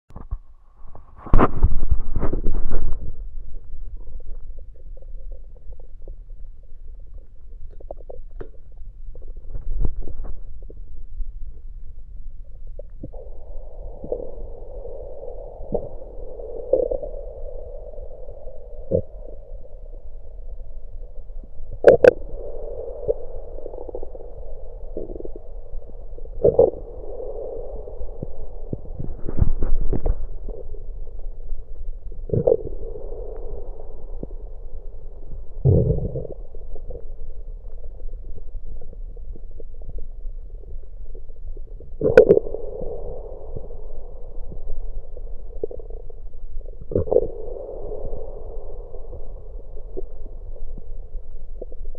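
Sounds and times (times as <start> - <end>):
stomach pops: 0.1 - 10.9, 21.8 - 22.2, 26.3 - 26.9, 28.2 - 30.8, 32.2 - 32.8, 35.6 - 37.1, 38.3 - 43.0, 46.8 - 47.5
stomach gurgling: 0.1 - 51.9.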